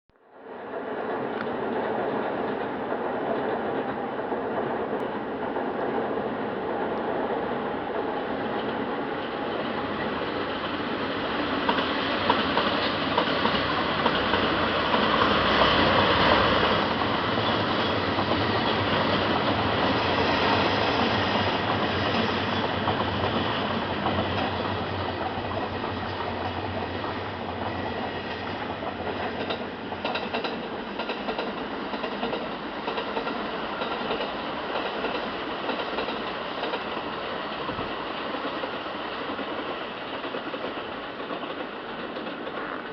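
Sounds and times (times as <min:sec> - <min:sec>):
diesel locomotive passing: 0:00.4 - 0:42.9
wheels clacking over rail joints: 0:07.8 - 0:42.9.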